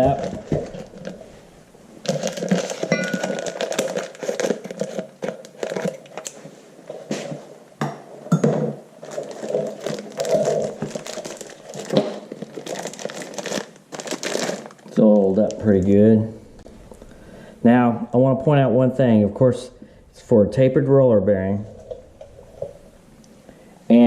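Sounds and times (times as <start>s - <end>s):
cardboard and wrapping crinkling: 0.0s - 1.4s, 2.0s - 7.4s, 9.0s - 16.1s.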